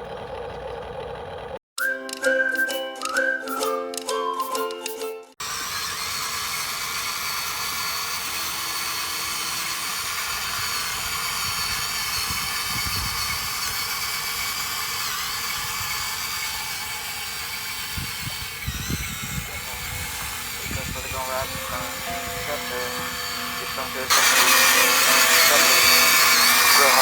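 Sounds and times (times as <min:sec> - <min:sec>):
small electric motors whining: 0:05.4 - 0:27.0.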